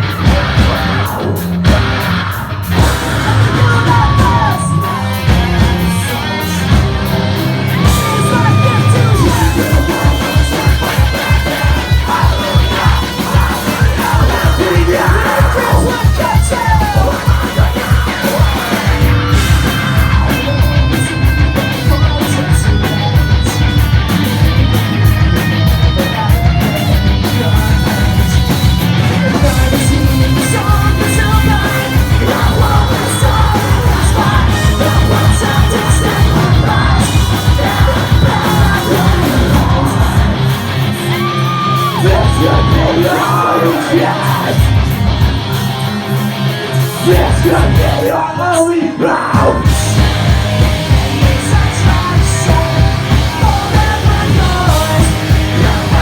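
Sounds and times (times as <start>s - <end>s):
pounding drums: 0.0s - 45.6s, 49.4s - 56.0s
distorted guitars: 0.0s - 56.0s
screamed and sung vocals: 0.0s - 56.0s.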